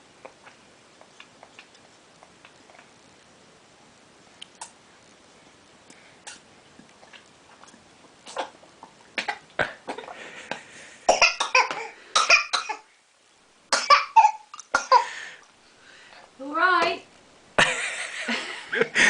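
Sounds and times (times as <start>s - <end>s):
baby coughing: 9.2s - 10.1s, 11.1s - 12.9s, 13.7s - 15.2s.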